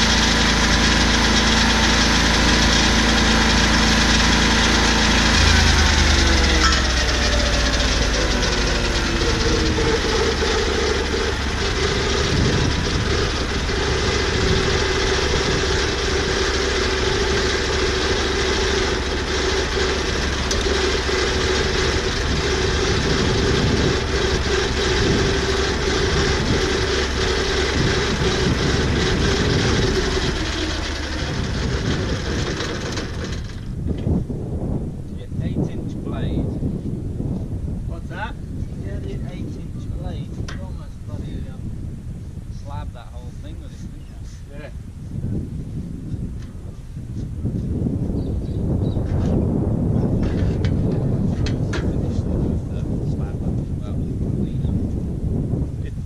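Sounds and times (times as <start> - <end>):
sawmill engine running: 0.0 - 34.3.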